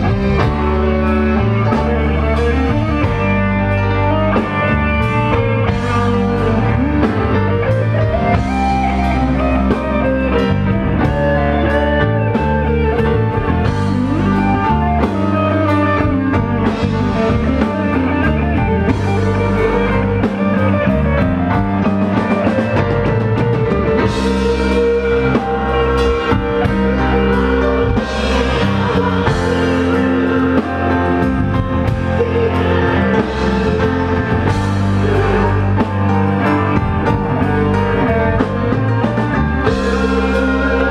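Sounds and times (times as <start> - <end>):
electric guitar: 0.0 - 40.9
rock band playing live: 0.0 - 40.9.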